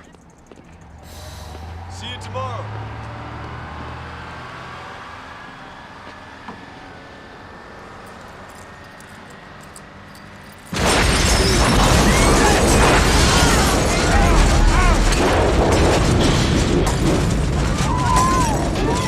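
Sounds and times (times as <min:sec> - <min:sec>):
low engine hum: 0:00.0 - 0:10.7
loud explosion with debris: 0:10.7 - 0:19.0.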